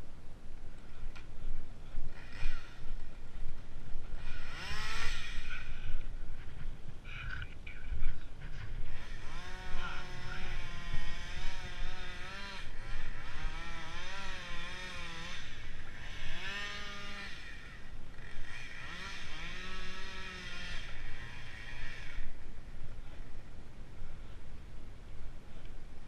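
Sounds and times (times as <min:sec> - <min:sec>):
engine revving: 0:02.1 - 0:03.2, 0:04.1 - 0:06.0, 0:08.4 - 0:22.4.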